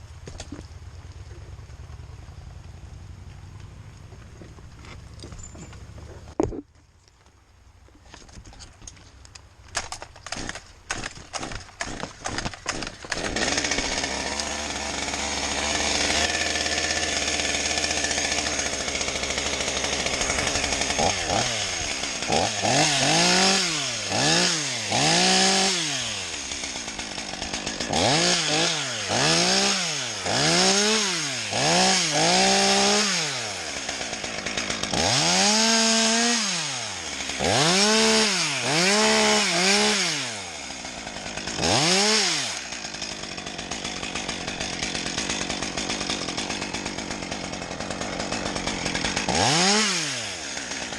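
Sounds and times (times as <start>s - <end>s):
small engine revving: 11.4s - 50.9s.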